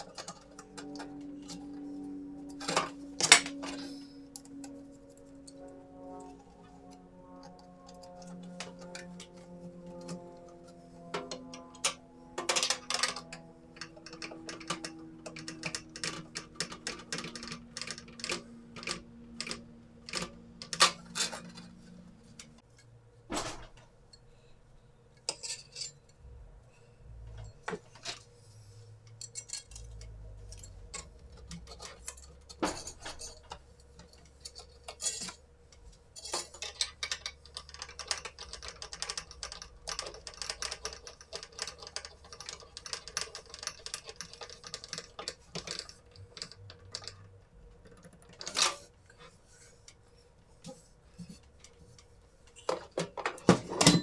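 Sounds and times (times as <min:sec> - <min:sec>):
metal and plastic parts clinking: 0:00.0 - 0:05.3, 0:11.2 - 0:22.5, 0:29.1 - 0:49.6, 0:50.7 - 0:54.0
faint low hum: 0:00.0 - 0:48.4.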